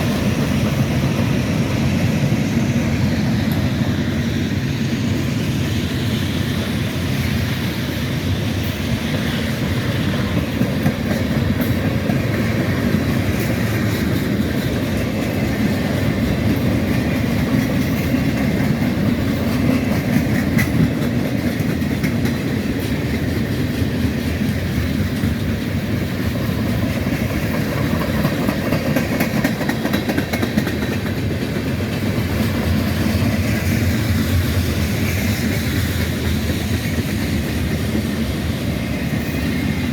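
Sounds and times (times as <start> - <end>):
train wheels rumbling on rails: 0.0 - 39.9
clicking over rail joints: 9.2 - 38.0.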